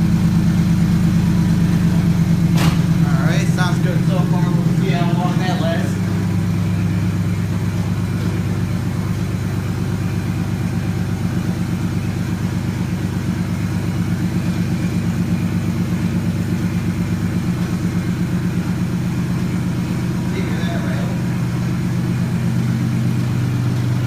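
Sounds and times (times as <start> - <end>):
car engine idling: 0.0 - 24.0.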